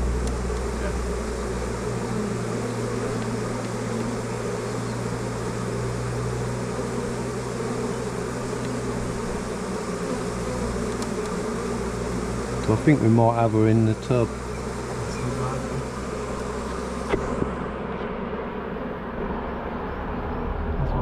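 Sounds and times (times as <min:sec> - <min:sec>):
bee swarm buzzing: 0:00.0 - 0:20.5.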